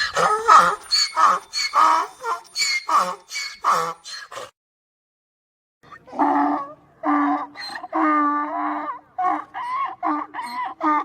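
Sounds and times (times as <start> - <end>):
donkey braying: 0.0 - 4.5.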